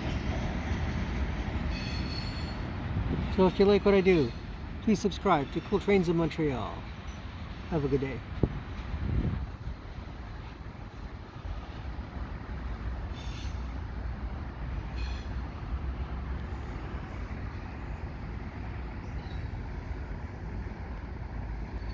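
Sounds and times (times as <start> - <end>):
short high squeals: 1.7 - 2.7
heavy vehicles rumbling past: 7.2 - 21.9.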